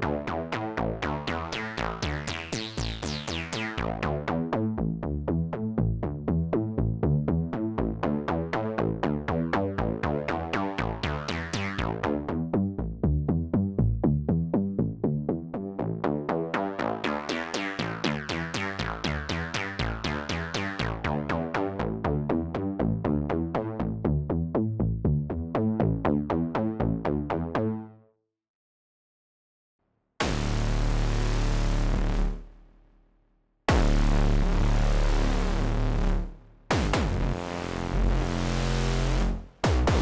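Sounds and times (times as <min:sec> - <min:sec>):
synthesizer sequenced pattern: 0:36.7 - 0:40.0.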